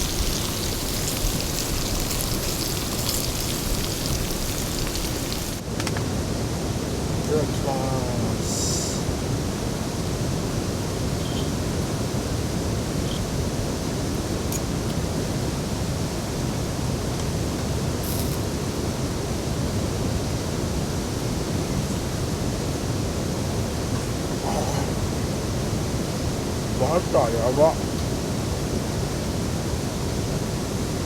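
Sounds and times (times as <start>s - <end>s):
heavy rain falling: 0.0s - 5.6s.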